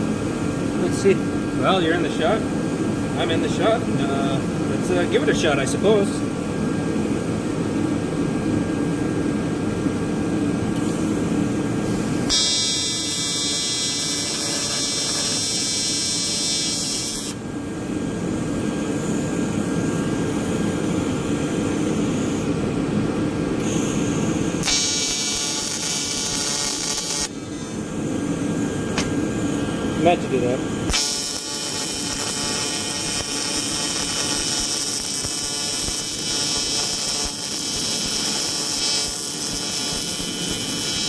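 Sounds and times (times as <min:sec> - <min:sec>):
tig welding arc buzzing: 0:10.8 - 0:17.4, 0:18.7 - 0:22.4, 0:23.6 - 0:41.0.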